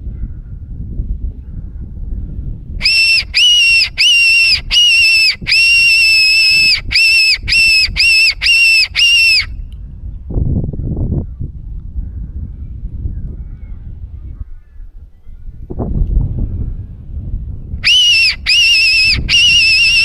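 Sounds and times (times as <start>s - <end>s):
shrill squealing fox call: 2.8s - 9.5s, 17.8s - 20.0s.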